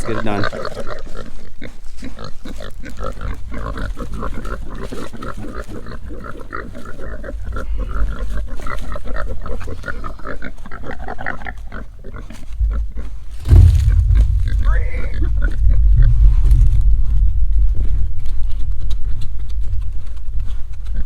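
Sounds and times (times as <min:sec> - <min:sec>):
pigs grunting and squealing: 0:00.0 - 0:13.3.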